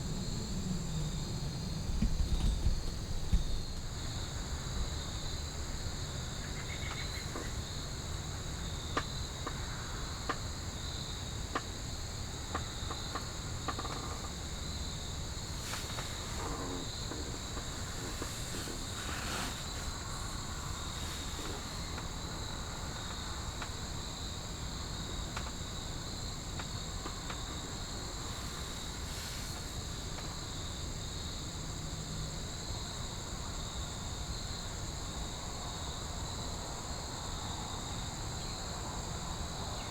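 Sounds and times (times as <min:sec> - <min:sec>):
crickets trilling: 0:00.0 - 0:39.9
insect pulsing chirp: 0:13.7 - 0:23.5.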